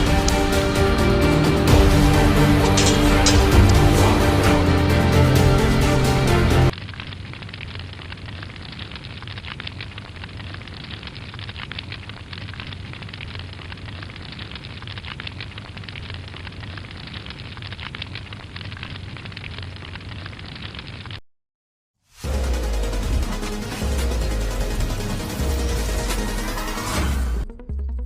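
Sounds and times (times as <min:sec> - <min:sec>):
fire roaring and crackling: 0:00.0 - 0:21.2.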